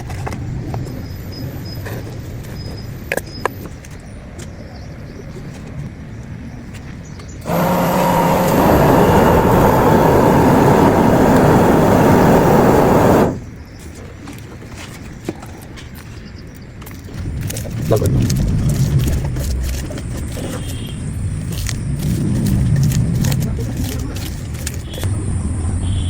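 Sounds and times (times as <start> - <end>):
loud steady rushing noise: 7.4 - 13.4.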